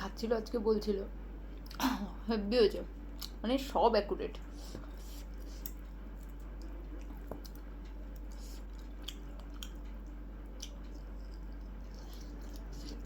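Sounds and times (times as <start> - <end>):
steady low hum: 0.0 - 13.0
person chewing food: 4.4 - 13.0.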